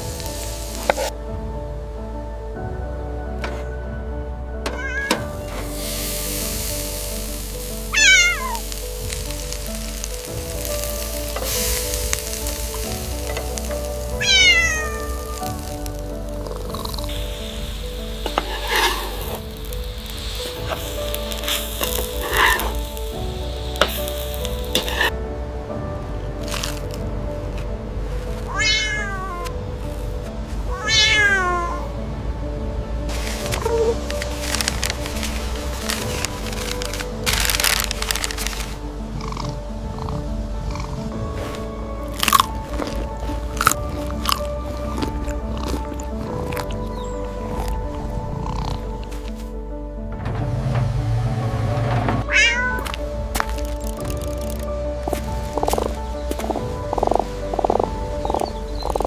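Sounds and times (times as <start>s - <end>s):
background music: 0.0s - 59.0s
steady hiss: 0.0s - 59.0s
cat meowing: 4.7s - 5.3s, 7.9s - 8.6s, 14.2s - 15.6s, 28.5s - 29.5s, 30.7s - 31.8s, 52.2s - 53.0s.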